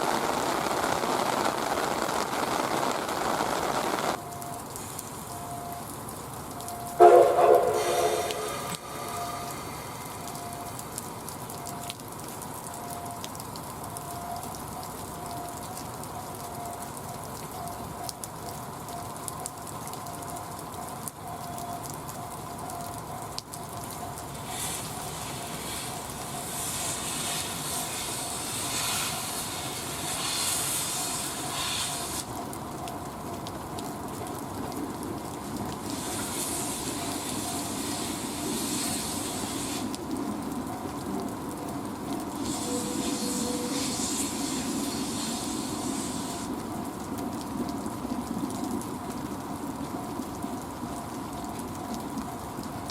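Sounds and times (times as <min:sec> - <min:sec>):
background whine: 0:00.0 - 0:52.9
steam locomotive hissing steam: 0:07.0 - 0:10.6, 0:24.4 - 0:32.4, 0:35.9 - 0:40.0, 0:42.4 - 0:46.6.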